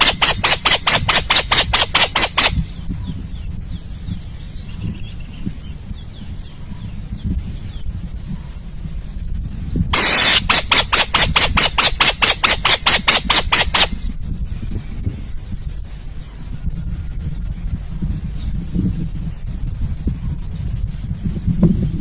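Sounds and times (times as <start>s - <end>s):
owl screeching: 0.0s - 2.7s, 10.0s - 14.0s
loud harsh screech: 10.0s - 14.0s.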